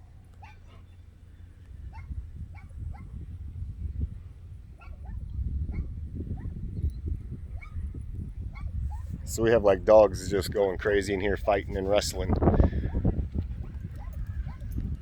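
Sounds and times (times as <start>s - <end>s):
low rumble: 0.0s - 15.0s
dogs barking and yelping: 0.3s - 1.0s, 1.9s - 3.2s, 4.7s - 6.6s, 7.5s - 9.2s, 12.6s - 15.0s.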